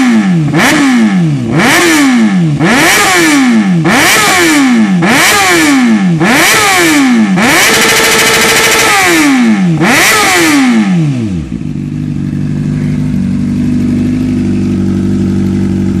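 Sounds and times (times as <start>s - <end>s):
motorcycle engine revving: 0.0s - 16.0s
motorcycle engine idling: 7.4s - 16.0s.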